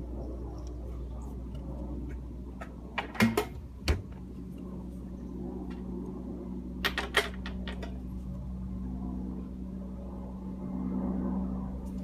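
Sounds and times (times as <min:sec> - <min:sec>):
engine running with a knock: 0:01.6 - 0:04.7, 0:06.8 - 0:08.4.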